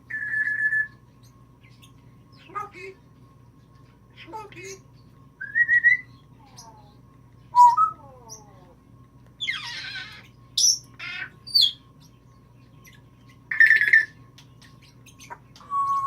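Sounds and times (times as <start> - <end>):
parrot whistling: 0.1 - 1.0, 5.4 - 6.1, 15.6 - 16.0
parrot squawking: 9.4 - 11.8, 13.5 - 14.2.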